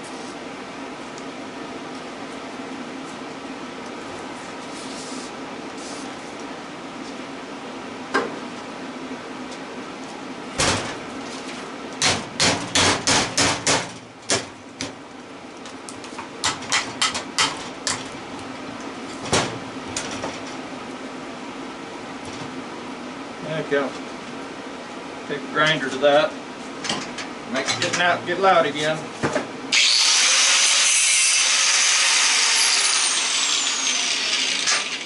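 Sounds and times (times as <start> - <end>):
steady hum: 0.0 - 31.5.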